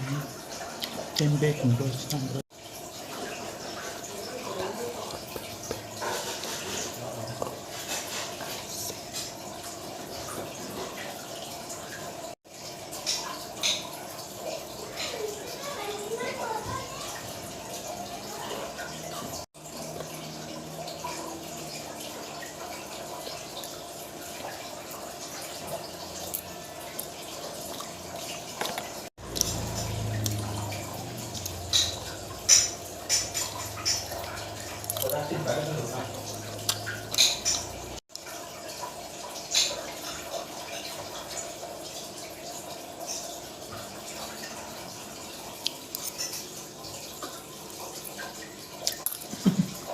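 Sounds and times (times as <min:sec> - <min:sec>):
wet chewing and lip-smacking: 0:29.2 - 0:32.0, 0:36.6 - 0:37.4, 0:48.8 - 0:49.3
wet chewing and mouth smacking: 0:34.8 - 0:35.2, 0:36.6 - 0:37.4, 0:48.8 - 0:49.3.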